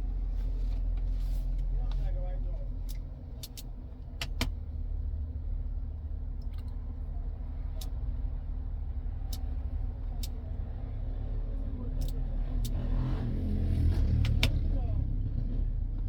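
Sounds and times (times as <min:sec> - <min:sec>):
car engine rumbling: 0:00.0 - 0:16.0
light sharp clicks: 0:09.2 - 0:10.5.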